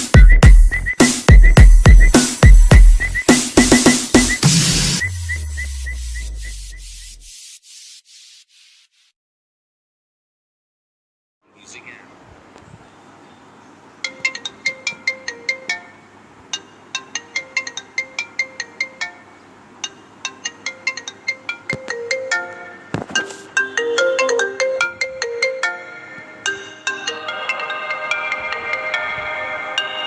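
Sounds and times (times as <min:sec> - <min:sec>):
phone ringtone melody: 0:14.1 - 0:16.0, 0:19.8 - 0:30.0.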